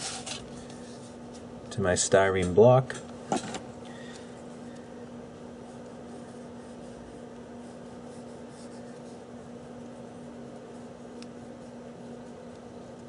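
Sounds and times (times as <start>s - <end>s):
steady electrical hum: 0.0s - 13.0s
pen scratching on paper: 5.6s - 13.0s.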